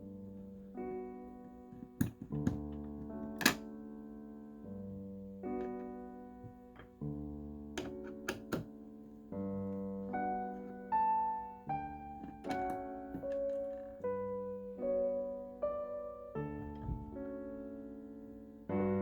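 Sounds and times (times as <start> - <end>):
gentle piano music: 0.0 - 19.0.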